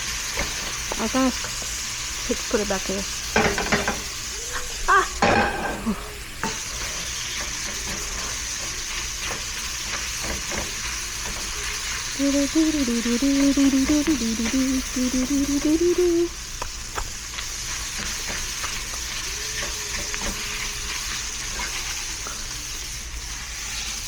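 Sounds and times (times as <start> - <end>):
meat sizzling in a pan: 0.0 - 24.0
person humming: 12.2 - 16.3.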